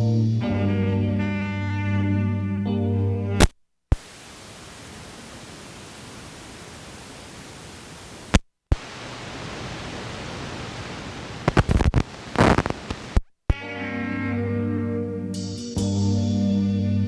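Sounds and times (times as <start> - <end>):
tape hiss: 0.0 - 17.0.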